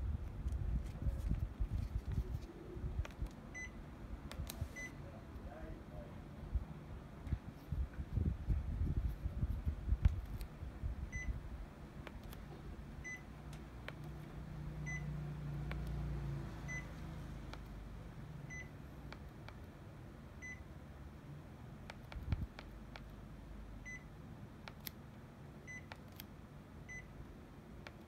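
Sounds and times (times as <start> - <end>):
air conditioner short high beeps: 3.5 - 3.8, 4.6 - 5.2, 11.1 - 11.4, 13.0 - 13.3, 14.8 - 15.2, 16.6 - 17.0, 18.5 - 18.8, 20.4 - 20.7, 23.8 - 24.2, 25.6 - 26.0, 26.8 - 27.1.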